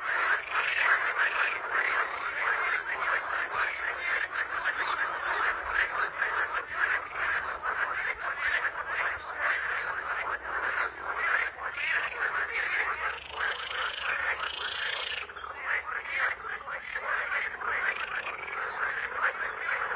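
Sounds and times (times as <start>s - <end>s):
frogs croaking: 0.0s - 19.9s.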